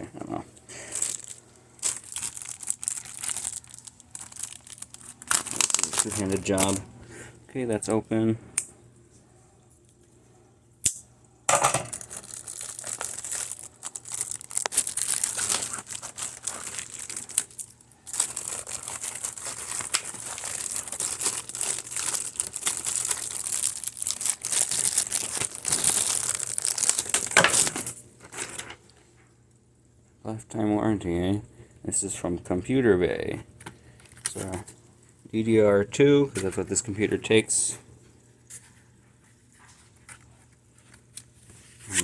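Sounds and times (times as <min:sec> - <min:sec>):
plastic packaging crinkling: 0:00.7 - 0:06.9, 0:11.6 - 0:28.8, 0:33.6 - 0:34.8.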